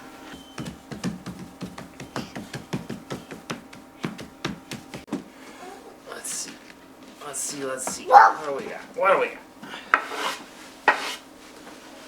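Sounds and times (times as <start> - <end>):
light irregular taps and knocks: 0.6 - 5.3.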